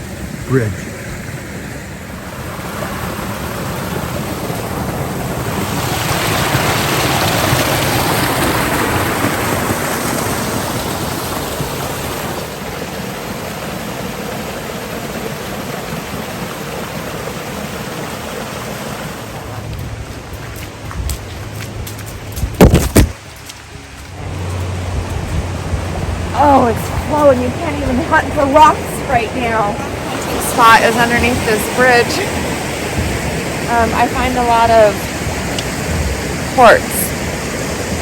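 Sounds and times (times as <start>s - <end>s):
river rushing over rocks: 0.0s - 38.0s.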